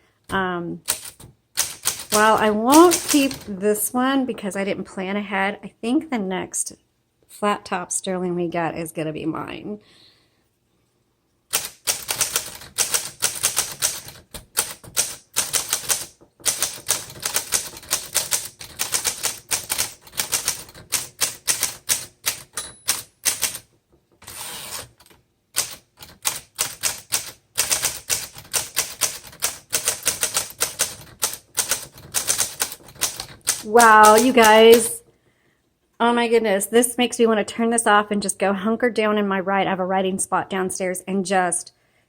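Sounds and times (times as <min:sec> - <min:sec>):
manual typewriter typing: 0:00.3 - 0:03.6, 0:11.5 - 0:35.0.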